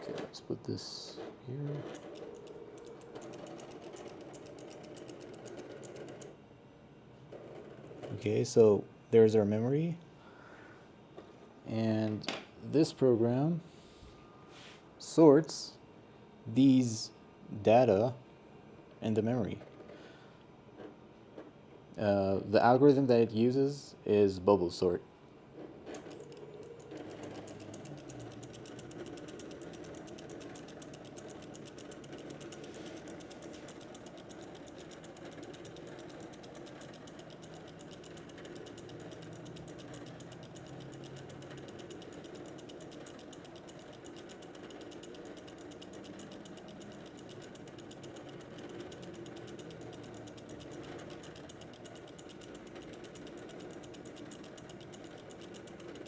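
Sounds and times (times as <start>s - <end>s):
rapid mechanical clicking: 1.8s - 6.4s, 25.9s - 56.0s.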